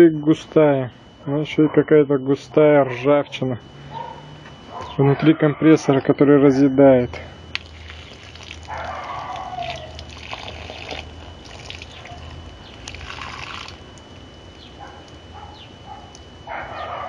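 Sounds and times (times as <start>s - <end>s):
water trickling into a container: 7.5s - 15.2s.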